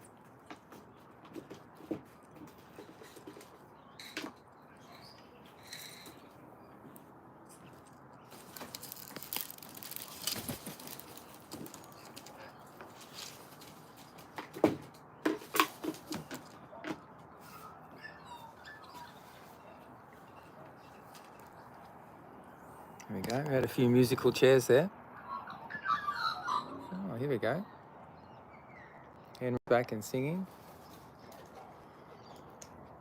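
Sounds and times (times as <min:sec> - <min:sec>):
birds fluttering and shuffling: 0:00.0 - 0:22.4, 0:30.1 - 0:33.0.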